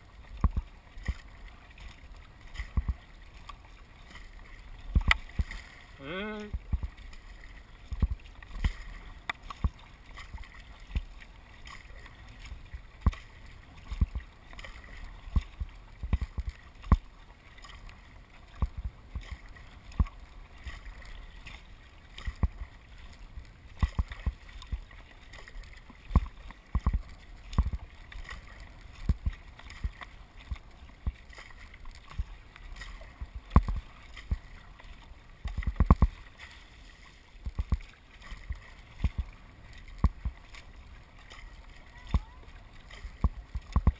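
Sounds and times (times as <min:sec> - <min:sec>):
water splashing and sloshing: 0:00.0 - 0:43.9
kayak thumps and knocks: 0:00.3 - 0:01.3, 0:02.4 - 0:03.0, 0:06.4 - 0:17.1, 0:22.2 - 0:22.8, 0:23.7 - 0:25.4, 0:33.0 - 0:34.5, 0:35.4 - 0:36.2, 0:37.4 - 0:40.6, 0:42.0 - 0:43.9.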